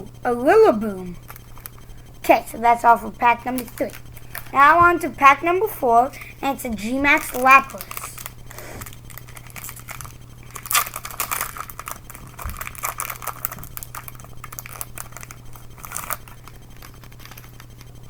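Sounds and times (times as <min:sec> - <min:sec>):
foil pack crinkling and tearing: 0:01.2 - 0:01.9, 0:03.5 - 0:04.6, 0:07.2 - 0:18.0.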